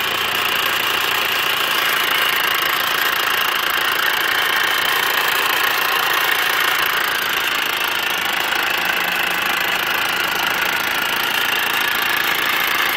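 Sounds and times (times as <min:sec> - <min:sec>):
car engine running: 0:00.0 - 0:12.9
supercharger rattling: 0:00.0 - 0:12.9.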